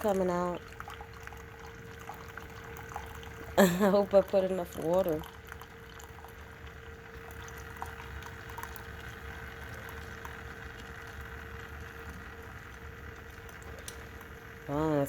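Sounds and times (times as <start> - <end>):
coffee maker humming: 0.0 - 15.0
coffee streaming into cup: 0.0 - 15.0.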